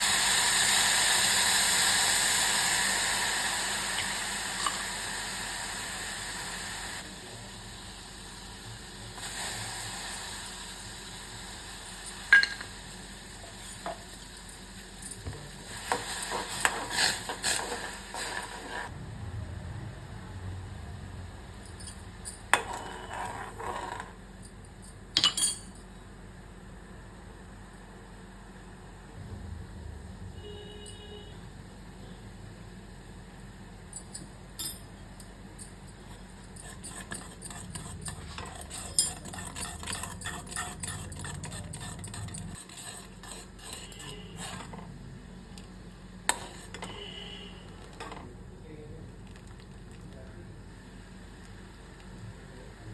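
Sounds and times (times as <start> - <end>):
hot pan sizzling: 0.0 - 18.9, 35.6 - 44.8, 46.2 - 47.3
utensils clinking: 33.9 - 44.8
utensils scraping: 35.6 - 45.0, 46.3 - 47.1.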